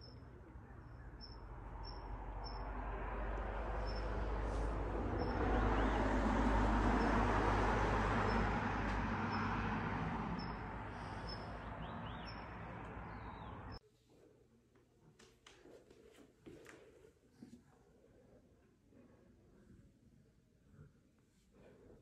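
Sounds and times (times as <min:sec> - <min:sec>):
vehicle passing: 0:00.0 - 0:13.8.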